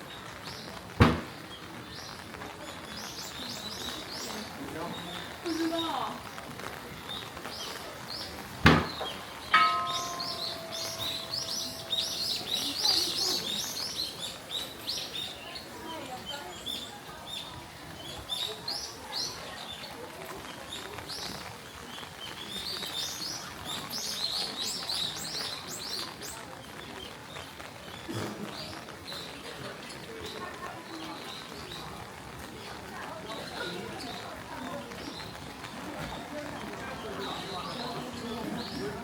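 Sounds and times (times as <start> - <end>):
small birds chirping: 0.0 - 39.0
sharp knock: 1.0 - 1.3, 8.7 - 12.4
small struck bell ringing: 9.6 - 12.6.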